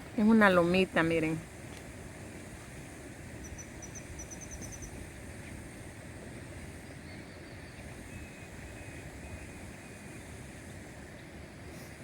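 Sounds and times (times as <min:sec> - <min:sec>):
wind rumble on microphone: 0:00.0 - 0:12.0
faint high bird calls: 0:03.4 - 0:05.0.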